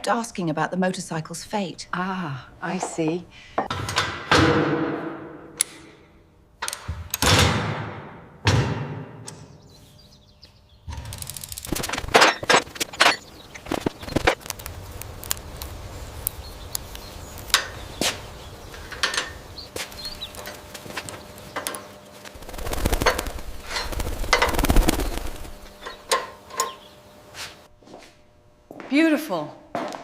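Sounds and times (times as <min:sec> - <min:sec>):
low steady hum: 0:11.0 - 0:28.7.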